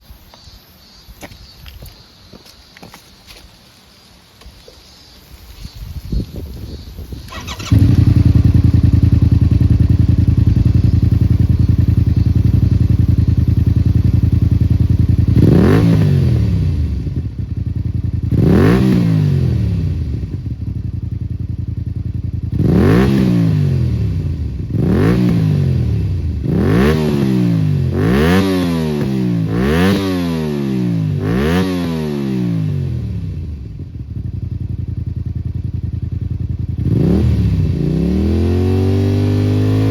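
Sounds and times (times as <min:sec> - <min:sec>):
motorcycle engine revving: 0:06.7 - 0:39.9.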